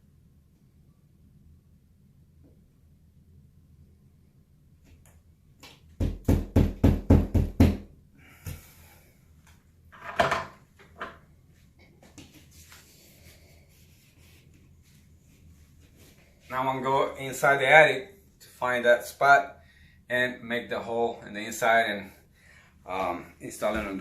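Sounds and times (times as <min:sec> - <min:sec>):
knocking through ceiling: 0:06.0 - 0:07.9.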